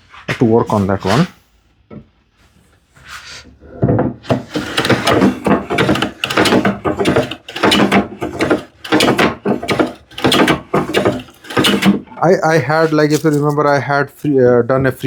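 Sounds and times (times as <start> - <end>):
hand plane strokes on wood: 4.3 - 12.1.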